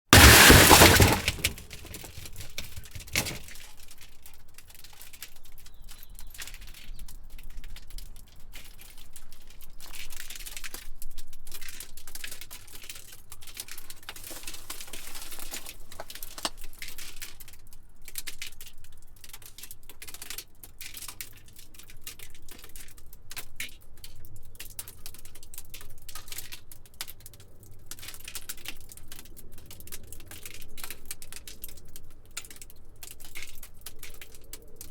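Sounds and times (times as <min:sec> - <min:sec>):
loud glass crack: 0:00.1 - 0:02.3.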